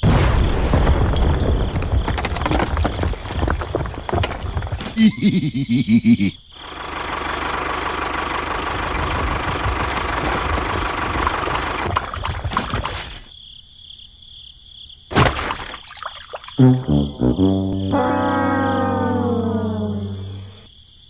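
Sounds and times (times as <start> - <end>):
engine running with faint whine: 6.6 - 11.9.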